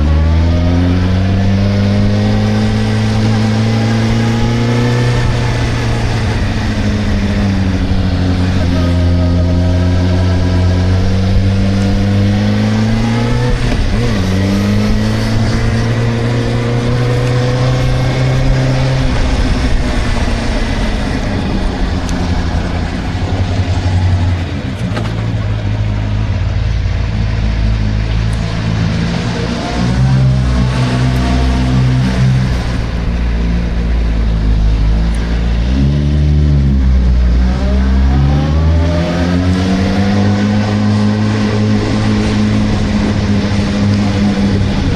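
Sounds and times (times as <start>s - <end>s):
motorcycle engine revving: 0.0s - 44.9s.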